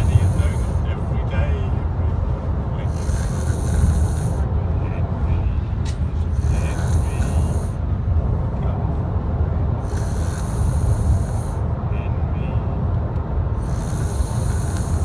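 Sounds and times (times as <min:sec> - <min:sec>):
person snoring: 0:00.0 - 0:00.9, 0:02.8 - 0:04.5, 0:06.3 - 0:07.8, 0:09.8 - 0:11.6, 0:13.6 - 0:15.0.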